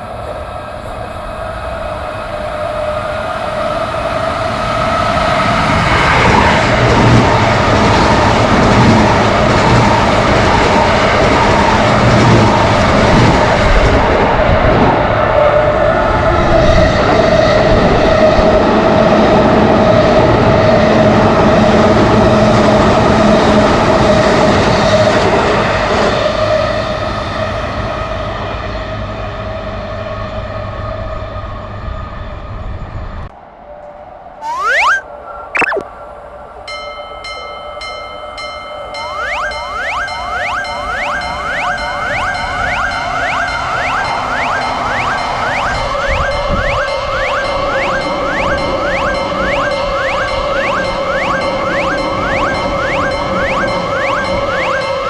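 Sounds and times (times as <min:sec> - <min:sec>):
crossing alarm ringing: 0:34.4 - 0:35.0, 0:36.7 - 0:55.0
electric train passing: 0:36.7 - 0:55.0.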